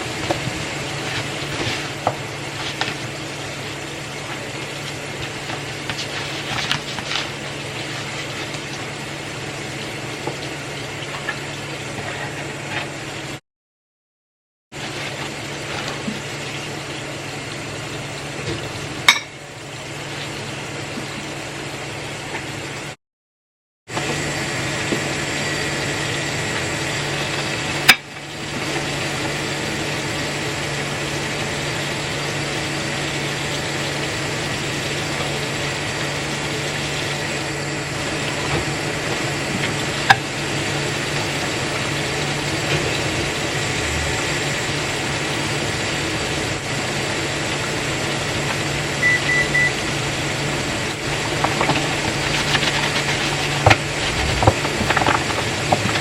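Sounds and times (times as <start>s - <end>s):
machine humming: 23.9s - 56.0s.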